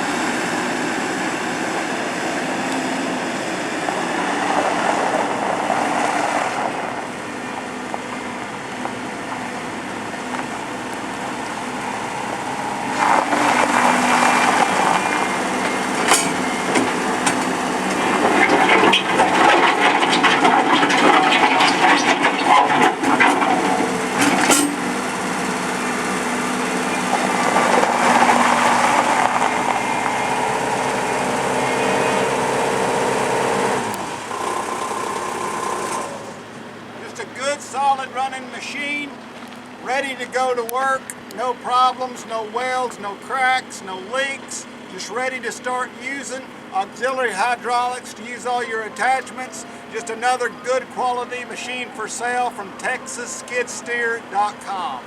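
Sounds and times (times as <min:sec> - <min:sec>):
skid steer engine under load: 0:00.0 - 0:55.0
sharp metallic knocks: 0:15.7 - 0:17.5, 0:24.2 - 0:24.9.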